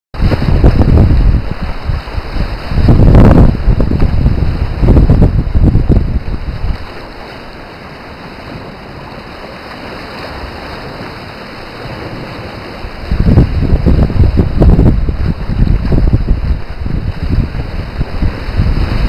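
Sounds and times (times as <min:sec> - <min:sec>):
wind buffeting microphone: 0:00.2 - 0:07.4, 0:10.6 - 0:19.0
sea surf hiss: 0:00.2 - 0:15.3.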